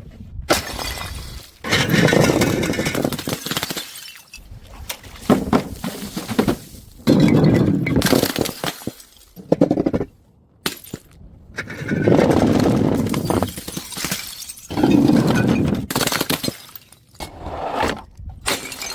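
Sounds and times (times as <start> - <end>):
glass shattering: 0.5 - 4.4, 13.1 - 17.0, 18.5 - 18.9.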